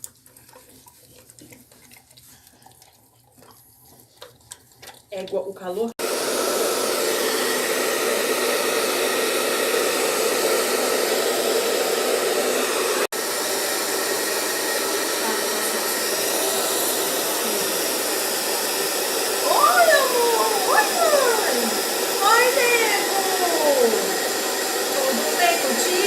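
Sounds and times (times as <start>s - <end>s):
hair dryer blowing: 6.0s - 26.0s.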